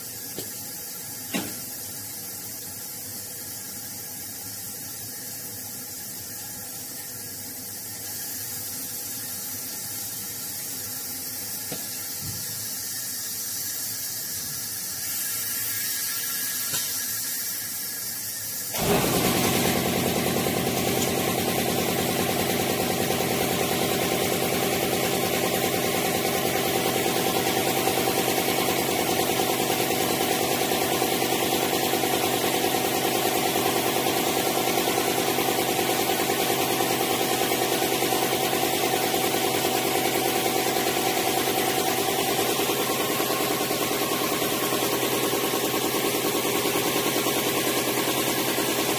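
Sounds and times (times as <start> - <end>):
steady machine hiss: 0.0 - 48.9.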